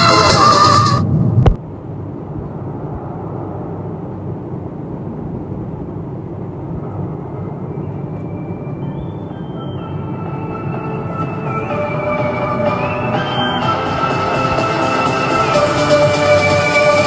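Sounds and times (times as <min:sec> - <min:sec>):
steady low rumble: 0:01.0 - 0:17.0
music: 0:07.3 - 0:17.0.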